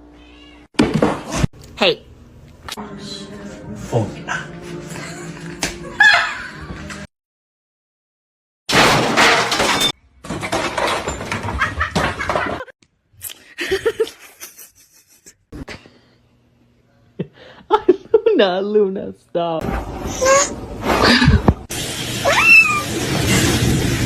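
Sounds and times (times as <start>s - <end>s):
crash and clatter: 8.7s - 12.7s.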